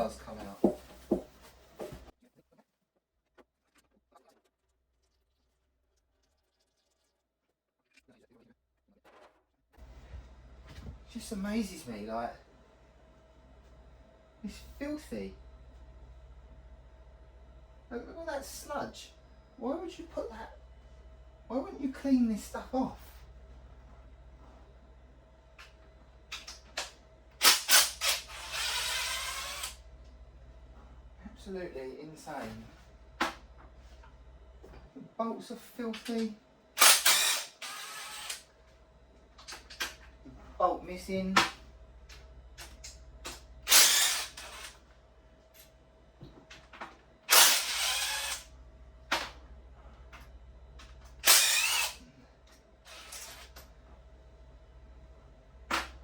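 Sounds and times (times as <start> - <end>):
cordless power tool spinning bolts: 27.4 - 29.8, 36.8 - 38.4, 43.3 - 44.8, 47.3 - 48.5, 51.2 - 52.0, 52.9 - 53.6.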